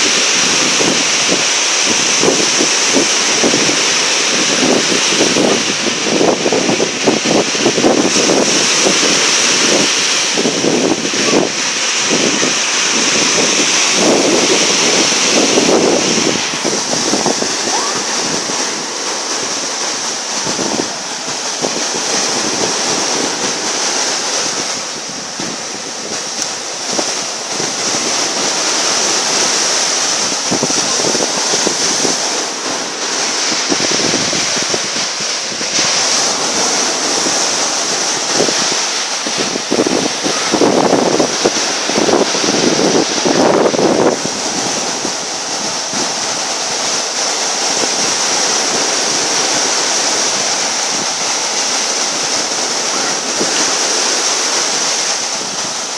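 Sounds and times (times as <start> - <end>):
sea waves washing: 0.0 - 55.9
wind gusting on microphone: 0.0 - 55.9.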